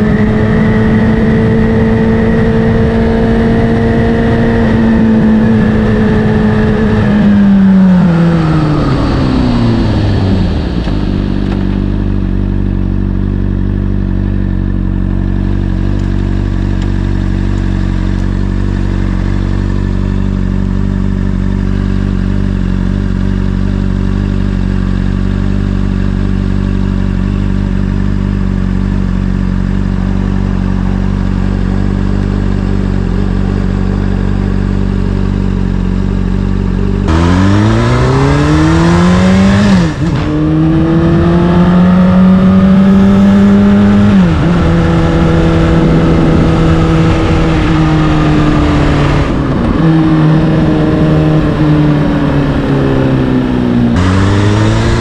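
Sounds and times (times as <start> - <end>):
motorcycle engine revving and idling: 0.0 - 55.0
wind rush: 37.1 - 55.0.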